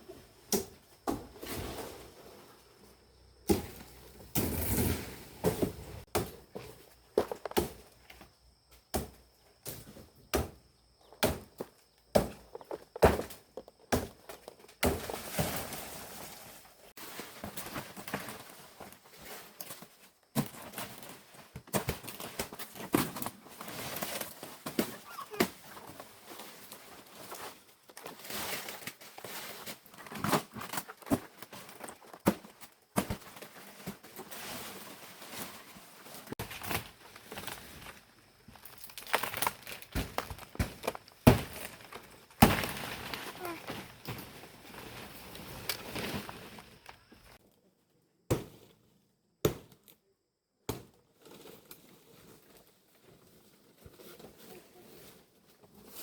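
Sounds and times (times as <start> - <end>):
rustling: 33.3 - 47.4.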